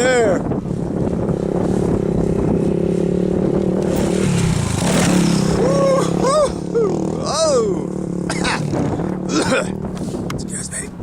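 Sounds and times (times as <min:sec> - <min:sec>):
off-road motorcycle engine running: 0:00.0 - 0:11.0
person shouting: 0:05.6 - 0:07.9.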